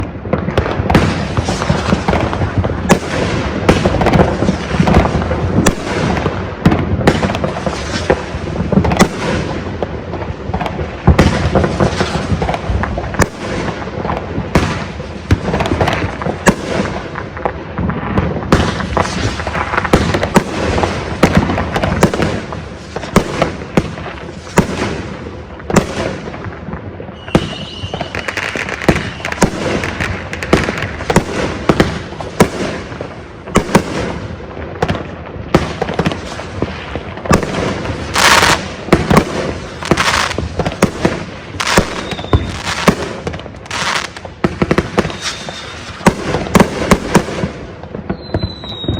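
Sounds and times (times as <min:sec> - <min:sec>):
firework crackling: 0:00.0 - 0:48.9
firework shots and bursts: 0:00.0 - 0:48.9
high whistle: 0:27.2 - 0:29.4, 0:42.0 - 0:42.5, 0:45.1 - 0:45.8, 0:48.1 - 0:48.9.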